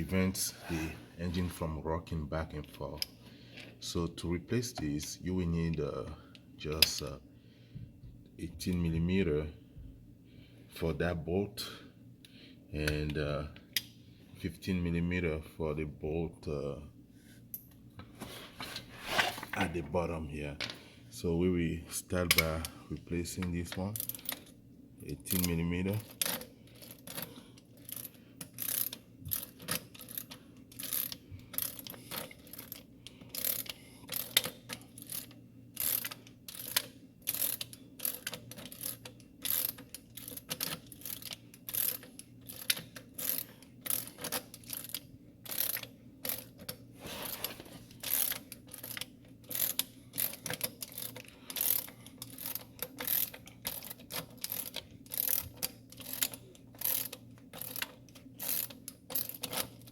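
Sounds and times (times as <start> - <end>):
socket ratchet clicking: 26.1 - 46.8, 48.0 - 59.9.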